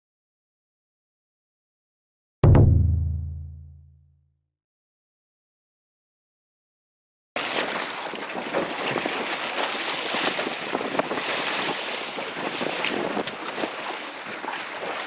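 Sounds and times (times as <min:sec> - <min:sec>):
water splashing around boat: 0:07.4 - 0:15.0
wind buffeting microphone: 0:07.9 - 0:15.0.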